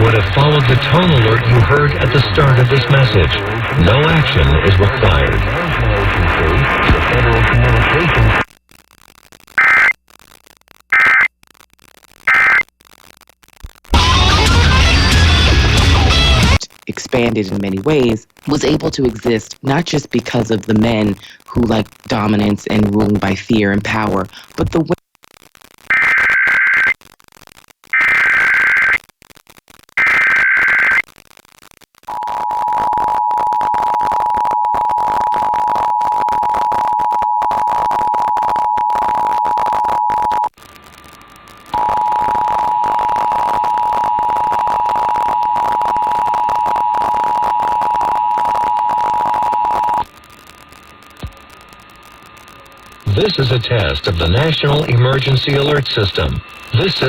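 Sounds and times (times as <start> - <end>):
screechy digital data bursts: 9.6 - 10.0, 10.9 - 11.3, 12.0 - 13.4, 25.8 - 27.0, 27.9 - 29.0, 30.0 - 31.1, 41.7 - 57.0.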